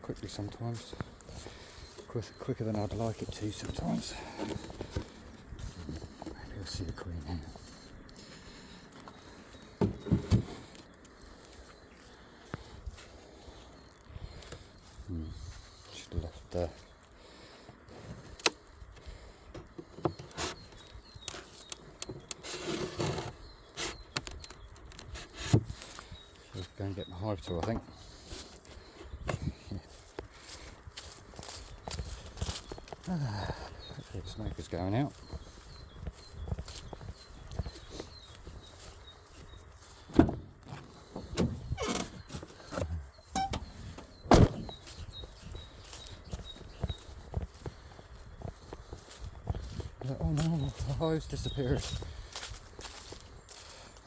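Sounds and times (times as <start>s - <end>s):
knocks of wooden frames handled: 9.8s - 10.6s
sharp thumps: 41.2s - 44.7s
brief squeak: 43.3s - 43.8s.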